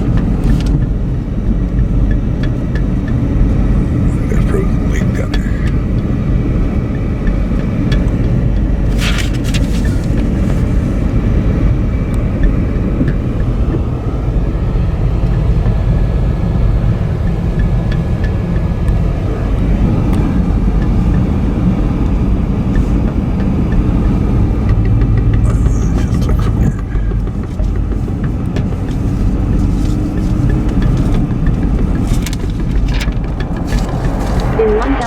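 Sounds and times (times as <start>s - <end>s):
car road and engine rumble: 0.0s - 35.0s.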